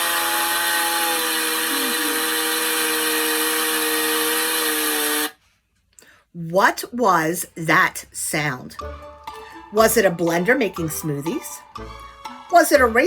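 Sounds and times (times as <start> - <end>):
chainsaw running: 0.0 - 5.4.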